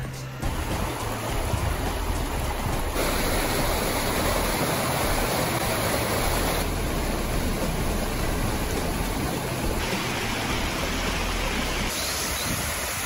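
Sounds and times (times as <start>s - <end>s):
rushing creek water: 0.4s - 13.0s.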